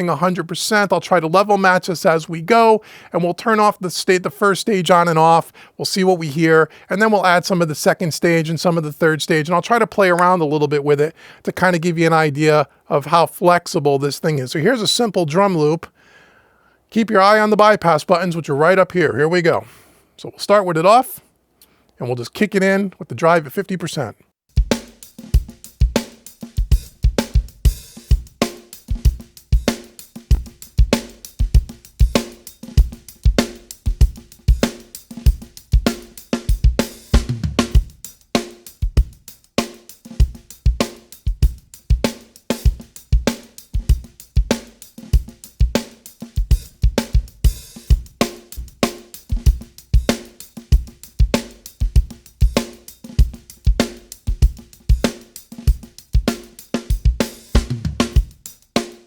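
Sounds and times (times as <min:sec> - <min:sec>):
drum loop: 0:00.0 - 0:00.4, 0:24.5 - 0:59.0.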